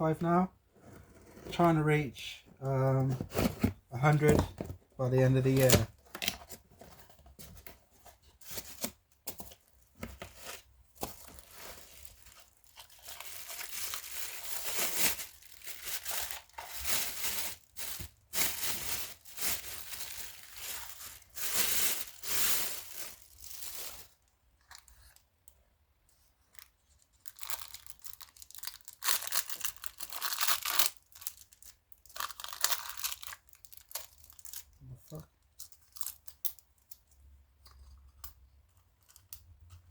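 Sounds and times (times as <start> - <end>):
packaging tearing and crinkling: 10.1 - 24.2, 27.3 - 34.7.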